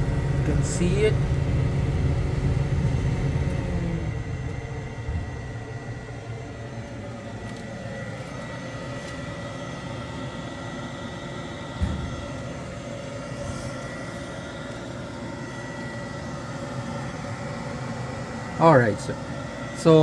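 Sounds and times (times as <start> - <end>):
low rumble: 0.0 - 7.6
blower motor hum with high tone: 0.0 - 20.0.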